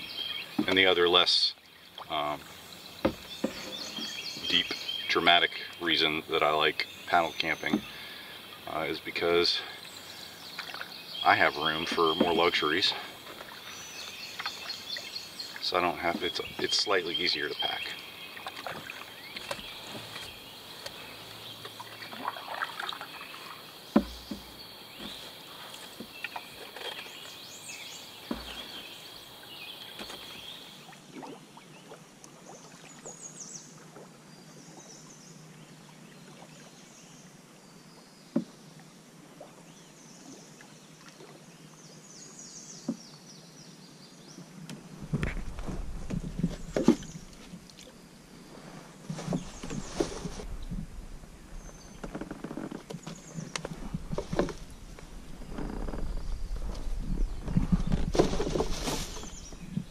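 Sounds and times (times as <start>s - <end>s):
paddle strokes in water: 0.1s - 1.0s, 1.6s - 5.8s, 7.4s - 8.4s, 9.7s - 34.8s, 44.6s - 59.9s
sharp knocks: 23.9s - 25.2s.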